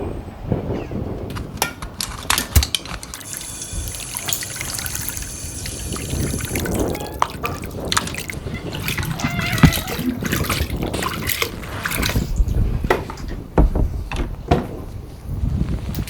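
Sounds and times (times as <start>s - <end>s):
clicks and knock: 1.3s - 3.3s, 12.9s - 15.0s
water pouring and trickling: 2.0s - 13.3s.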